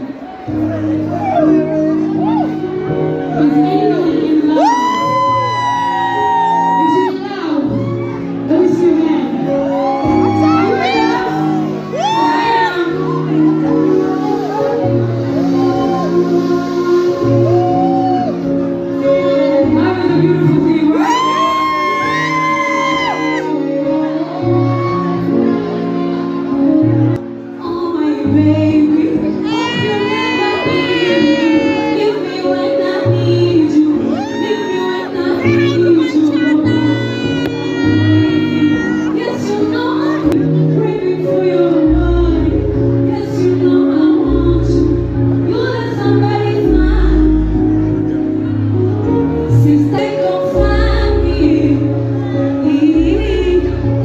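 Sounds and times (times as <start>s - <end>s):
high-voiced singer: 0.0s - 54.0s.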